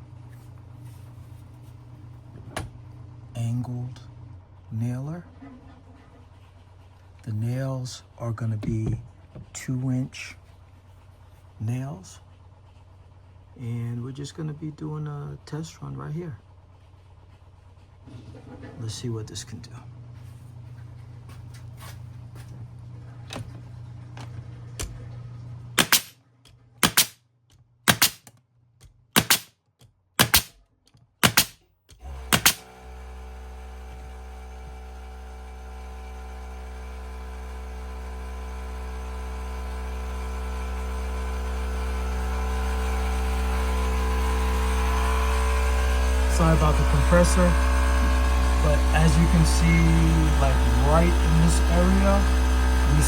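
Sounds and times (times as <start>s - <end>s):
air compressor running: 24.6s - 26.2s, 26.8s - 27.2s, 27.9s - 28.3s, 29.1s - 29.5s, 30.2s - 30.5s, 31.2s - 53.0s
nail gun shots: 25.8s - 26.2s, 26.8s - 27.2s, 27.9s - 28.3s, 29.2s - 29.5s, 30.2s - 30.6s, 31.2s - 31.6s, 32.3s - 32.7s.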